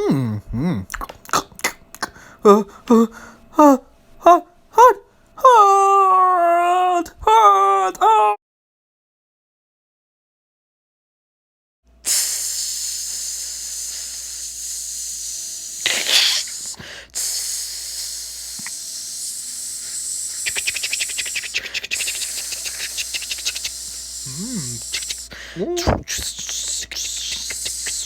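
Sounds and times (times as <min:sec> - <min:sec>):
steady hissing: 0:12.1 - 0:28.0
fast fluttering rattle: 0:12.4 - 0:25.3.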